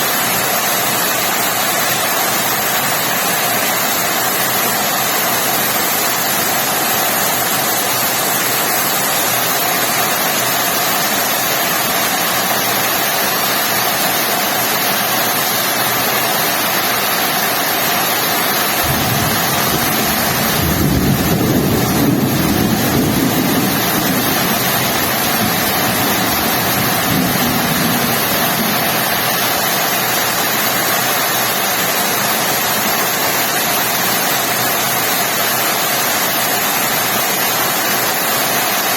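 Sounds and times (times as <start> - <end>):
heavy rain falling: 0.0 - 38.9
low rumble: 18.8 - 29.8.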